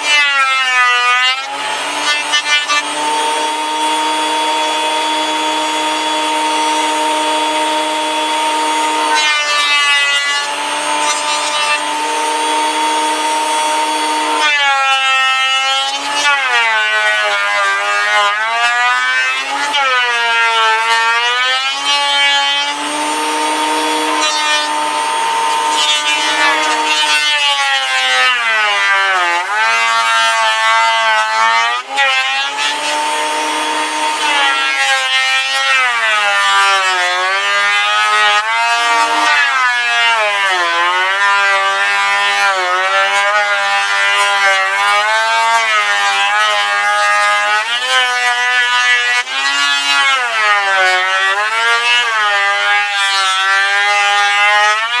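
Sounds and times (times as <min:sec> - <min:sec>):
power saw whining cutting wood: 0:00.0 - 0:55.0.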